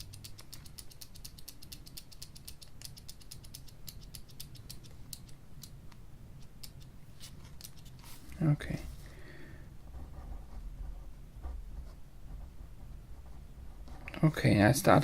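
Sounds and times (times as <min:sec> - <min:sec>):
mechanical pencil clicking: 0:00.0 - 0:06.9.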